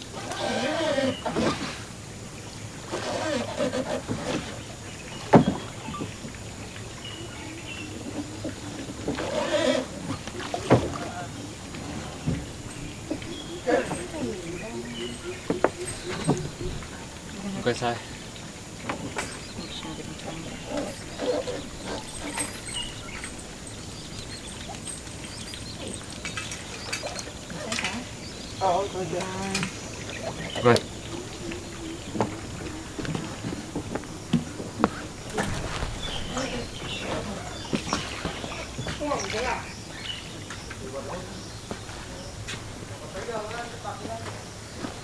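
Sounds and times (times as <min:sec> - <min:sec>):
boat and water noise: 0:00.0 - 0:45.0
sharp knock on boat: 0:05.2 - 0:06.4, 0:15.4 - 0:16.8.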